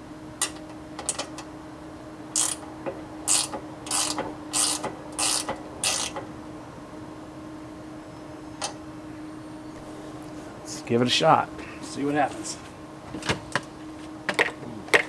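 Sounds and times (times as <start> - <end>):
faint steady hum: 0.0 - 15.0
ratchet-like metallic strokes: 2.4 - 2.6, 3.3 - 6.2.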